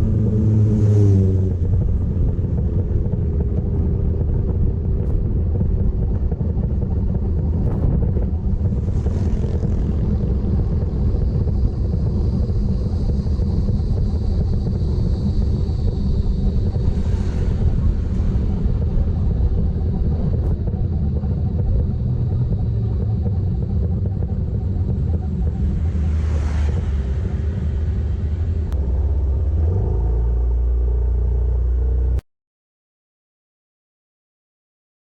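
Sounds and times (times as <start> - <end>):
wind buffeting microphone: 0.0 - 28.8
motorcycle engine rumble: 0.0 - 32.2
whoosh: 7.6 - 22.0.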